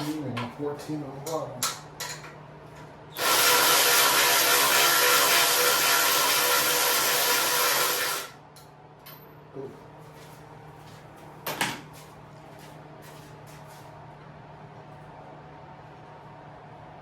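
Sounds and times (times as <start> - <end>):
power tool whirring: 3.1 - 8.4.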